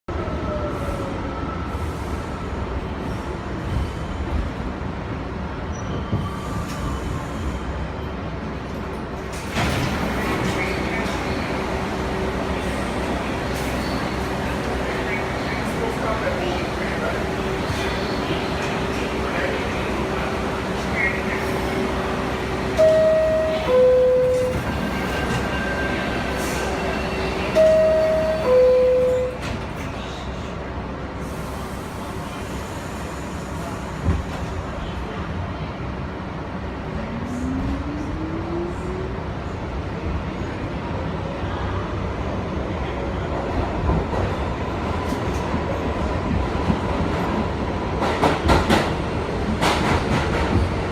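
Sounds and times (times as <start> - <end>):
train humming: 6.4 - 50.9
two-tone door chime: 27.6 - 29.4.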